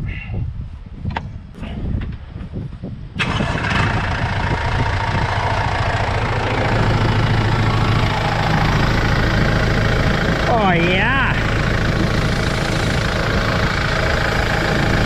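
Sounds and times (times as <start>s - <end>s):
engine cranking and idling: 3.2s - 15.0s.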